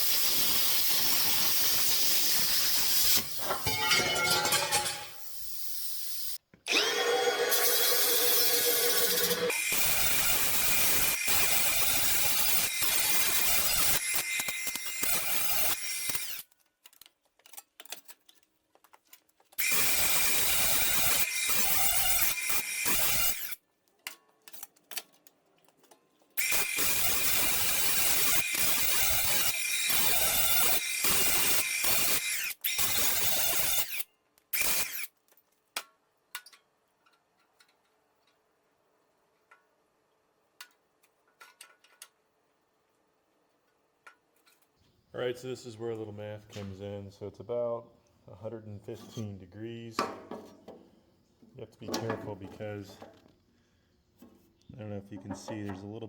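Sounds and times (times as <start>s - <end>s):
power tool whining: 6.7s - 16.4s
metal clicks and taps: 35.8s - 38.4s, 40.6s - 42.2s.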